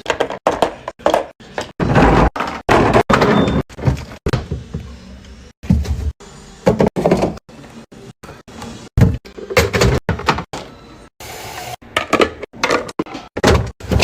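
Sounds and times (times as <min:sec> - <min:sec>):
refrigerator doors opening and closing: 0:01.4 - 0:04.9.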